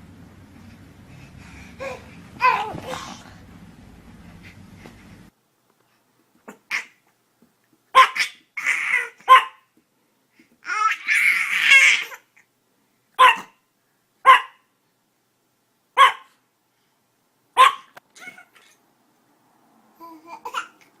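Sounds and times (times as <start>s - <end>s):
small dog yapping: 7.9s - 9.7s, 13.2s - 13.6s, 14.2s - 14.6s, 16.0s - 16.3s, 17.6s - 18.8s.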